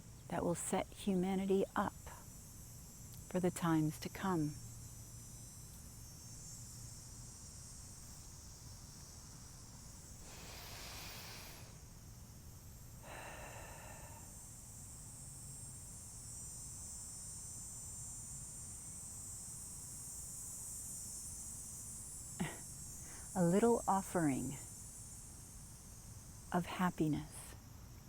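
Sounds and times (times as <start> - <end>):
steady high-pitched hiss: 0.0 - 28.0
faint breathing: 10.2 - 11.9, 13.0 - 14.4, 22.4 - 23.4.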